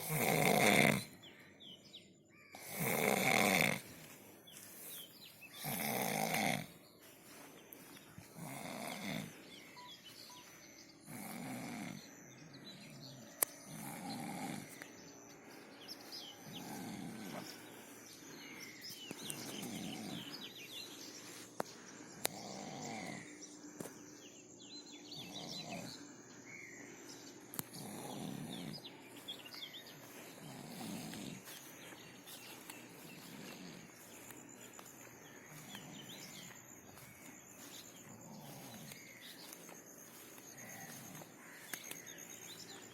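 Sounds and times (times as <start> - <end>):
person snoring: 0.0 - 1.2, 2.6 - 3.9, 5.5 - 6.7, 8.3 - 9.4, 11.0 - 12.1, 13.7 - 14.8, 16.4 - 17.5, 22.2 - 23.3, 27.7 - 28.8, 30.3 - 31.5, 38.0 - 39.2.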